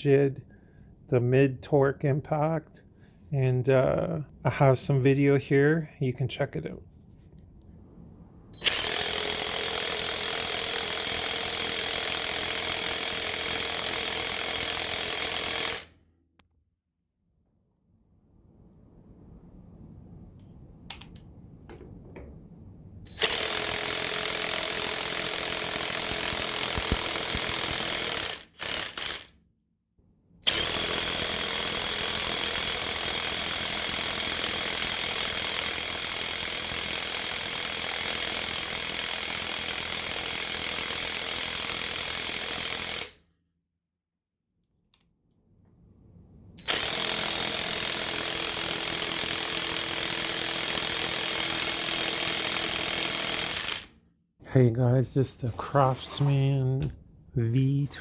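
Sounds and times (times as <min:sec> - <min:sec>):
impact wrench hammering: 0:08.7 - 0:15.9, 0:23.2 - 0:29.3.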